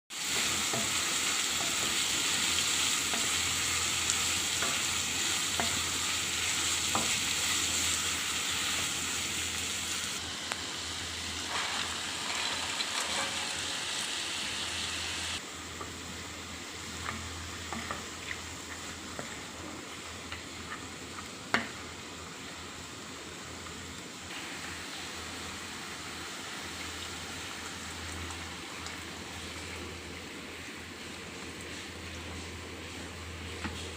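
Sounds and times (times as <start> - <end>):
utensil stirring in a pan: 0.1 - 10.2, 11.4 - 14.1, 16.7 - 22.0, 30.6 - 33.9
food sizzling in a pan: 0.1 - 33.9.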